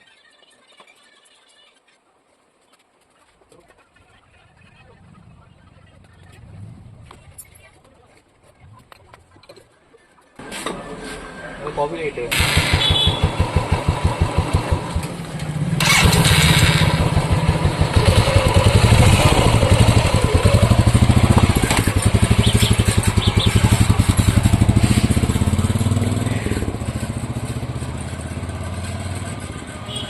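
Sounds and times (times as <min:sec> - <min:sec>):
motorcycle engine revving: 0:10.4 - 0:30.0.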